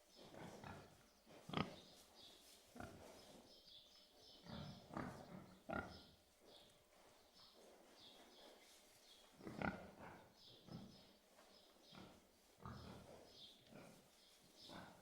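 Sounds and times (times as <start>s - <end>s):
pigs grunting: 0.3s - 1.9s, 4.4s - 6.1s, 9.4s - 11.1s, 11.9s - 15.0s.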